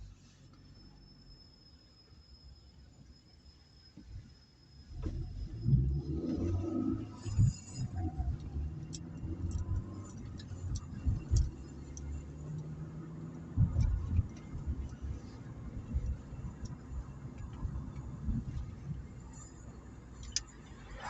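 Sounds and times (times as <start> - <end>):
car engine and tyre rumble: 0.0 - 21.0
thumps and light ticks: 7.2 - 19.2.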